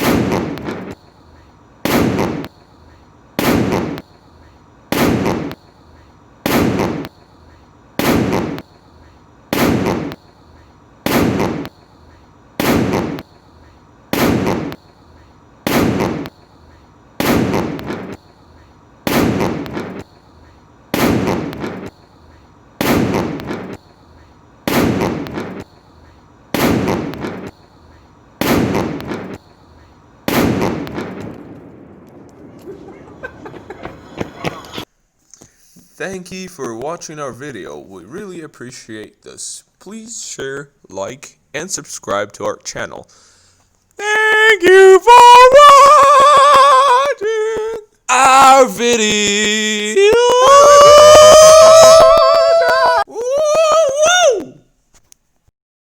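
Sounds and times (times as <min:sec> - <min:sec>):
firecracker bangs: 0:00.0 - 0:01.0, 0:01.8 - 0:02.6, 0:03.4 - 0:04.2, 0:04.9 - 0:05.7, 0:06.4 - 0:07.2, 0:08.0 - 0:08.8, 0:09.5 - 0:10.3, 0:11.0 - 0:11.9, 0:12.6 - 0:13.4, 0:14.1 - 0:14.9, 0:15.6 - 0:16.5, 0:17.2 - 0:18.4, 0:19.0 - 0:20.2, 0:20.9 - 0:22.1, 0:22.8 - 0:24.0, 0:24.6 - 0:25.8, 0:26.5 - 0:27.8, 0:28.4 - 0:29.6, 0:30.2 - 0:34.9.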